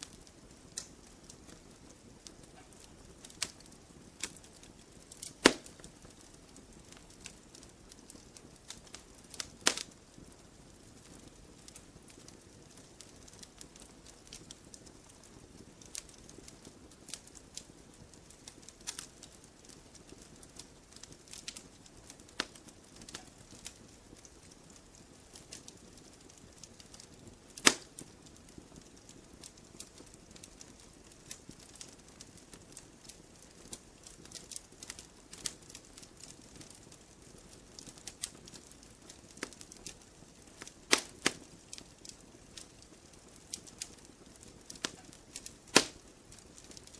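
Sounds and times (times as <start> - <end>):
soft steady hiss: 0.0 - 46.9
wood fire crackling: 0.0 - 46.9
loud pop: 5.4 - 5.8.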